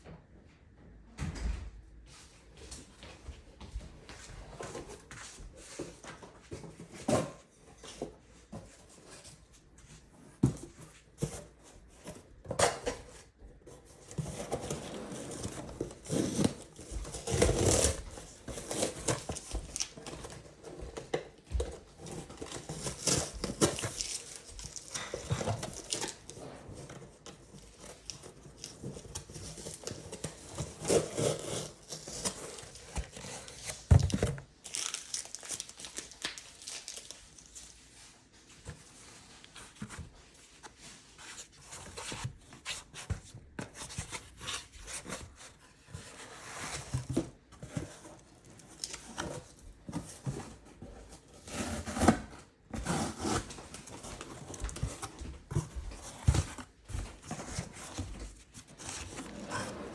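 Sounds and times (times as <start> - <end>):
packaging rustling and crinkling: 13.8 - 59.8.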